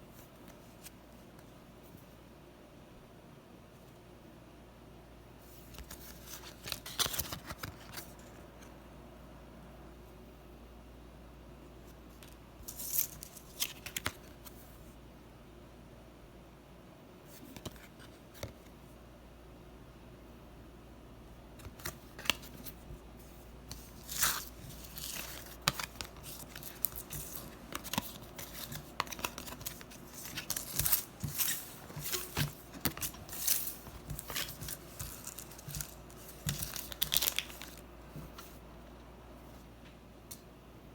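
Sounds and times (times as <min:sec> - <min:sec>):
wrapper tearing and crinkling: 0:24.0 - 0:37.8.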